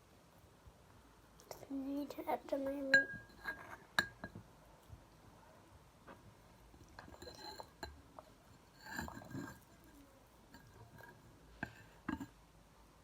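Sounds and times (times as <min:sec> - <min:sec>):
spoon scraping a bowl: 0:02.9 - 0:04.3, 0:06.8 - 0:12.4.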